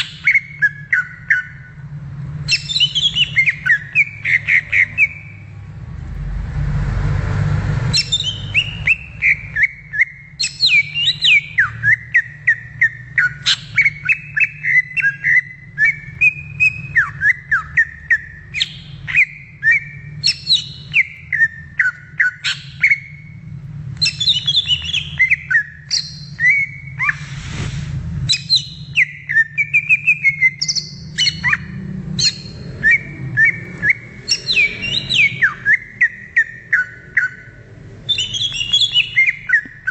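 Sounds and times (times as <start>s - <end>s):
bird singing: 0.0s - 5.6s, 7.9s - 27.2s, 28.3s - 39.9s
steady low hum: 0.0s - 39.9s
hiss burst: 27.1s - 28.1s.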